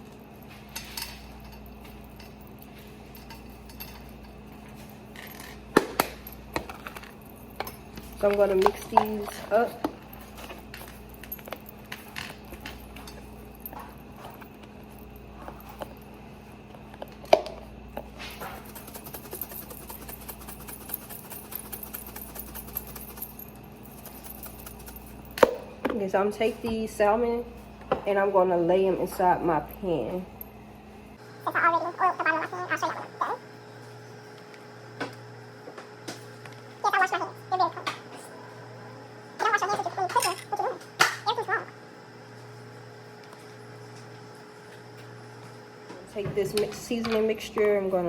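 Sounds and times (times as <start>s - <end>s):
containers clinking against bowl: 3.2s - 14.6s
utensil clinking and scraping bowl: 6.5s - 14.6s, 18.2s - 25.5s.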